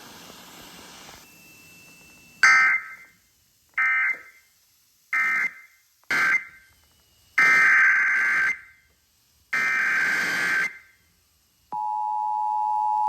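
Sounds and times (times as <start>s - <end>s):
faint hiss: 0.0s - 2.4s.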